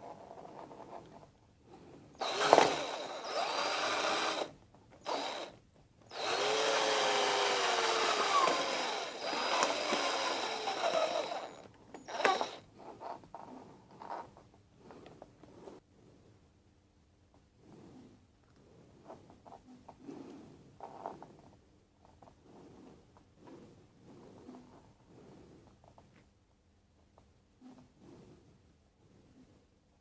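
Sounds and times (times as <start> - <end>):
handheld power tool running: 2.2 - 12.7.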